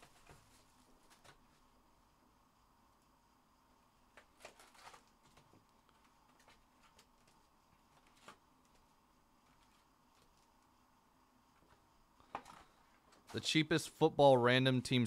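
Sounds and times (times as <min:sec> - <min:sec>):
card packs rustling and clicking: 0:04.2 - 0:05.6.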